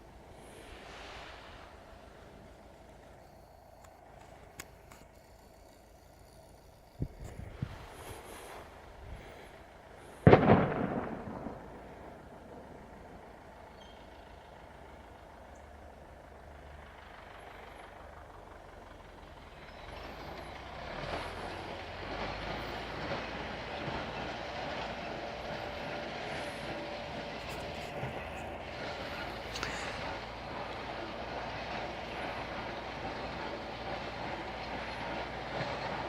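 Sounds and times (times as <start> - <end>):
tractor diesel engine running: 0.0 - 36.0
loud bang: 10.2 - 13.2.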